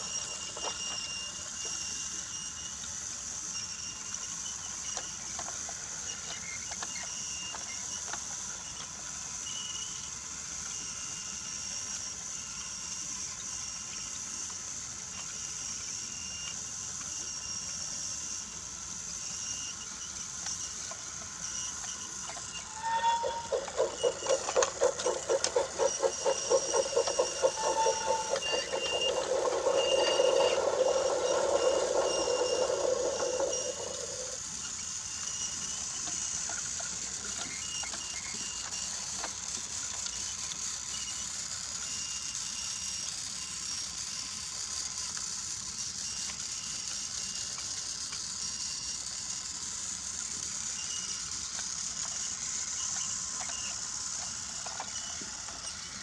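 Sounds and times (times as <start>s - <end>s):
toy train motor whirring: 0.0s - 56.0s
rhythmic pulsing with clicks: 20.3s - 35.1s.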